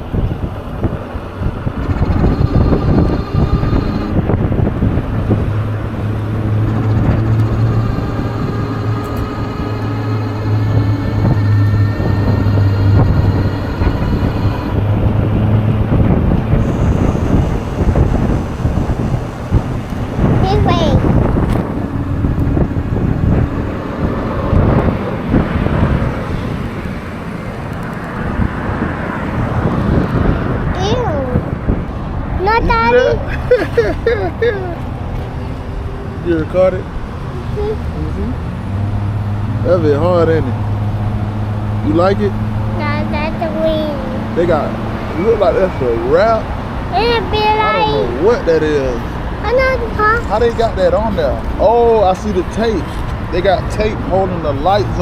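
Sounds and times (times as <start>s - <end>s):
road and traffic noise: 0.0s - 55.0s
wind buffeting microphone: 0.0s - 55.0s
steady low hum: 0.8s - 32.2s.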